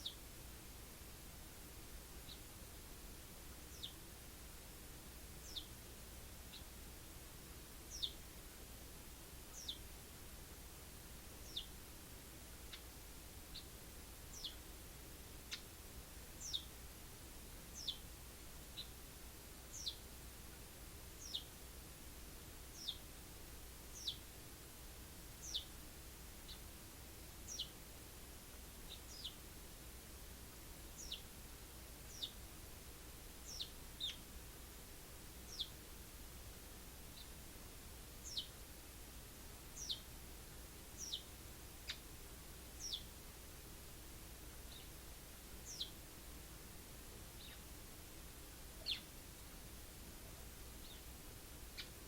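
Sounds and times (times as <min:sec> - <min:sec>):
sparrow chirping: 0:00.0 - 0:00.2, 0:02.2 - 0:02.5, 0:03.7 - 0:04.0, 0:05.4 - 0:05.8, 0:06.5 - 0:06.7, 0:07.9 - 0:08.2, 0:09.5 - 0:09.9, 0:11.4 - 0:11.8, 0:13.5 - 0:14.6, 0:15.4 - 0:15.7, 0:16.4 - 0:16.8, 0:17.7 - 0:18.1, 0:18.7 - 0:19.0, 0:19.7 - 0:20.0, 0:21.2 - 0:21.5, 0:22.7 - 0:23.0, 0:23.9 - 0:24.3, 0:25.4 - 0:25.8, 0:26.4 - 0:26.7, 0:27.4 - 0:27.8, 0:28.9 - 0:29.4, 0:30.9 - 0:31.3, 0:32.0 - 0:32.4, 0:33.4 - 0:34.3, 0:35.4 - 0:35.8, 0:37.1 - 0:37.4, 0:38.2 - 0:38.6, 0:39.8 - 0:40.1, 0:41.0 - 0:42.1, 0:42.8 - 0:43.1, 0:44.7 - 0:45.0, 0:45.6 - 0:46.0, 0:47.4 - 0:47.7, 0:48.8 - 0:49.1, 0:50.8 - 0:51.1, 0:51.7 - 0:52.0
faint steady hiss: 0:00.0 - 0:52.0.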